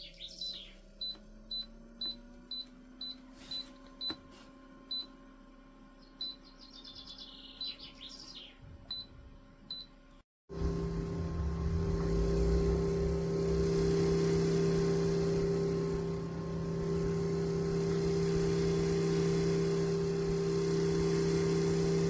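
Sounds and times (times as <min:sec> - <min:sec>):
chirping trills: 0:06.0 - 0:08.6.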